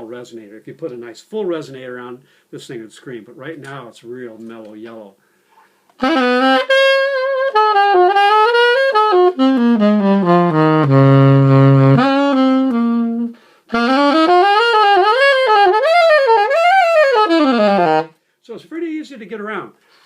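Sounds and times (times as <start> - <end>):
solo alto saxophone: 6.0 - 18.2.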